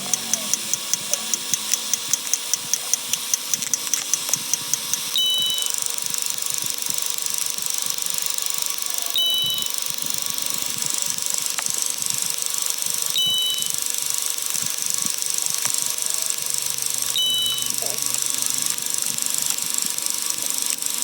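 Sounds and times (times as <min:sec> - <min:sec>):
two-tone electronic beep: 0:05.1 - 0:05.8, 0:09.0 - 0:09.9, 0:13.1 - 0:13.8, 0:17.2 - 0:17.9.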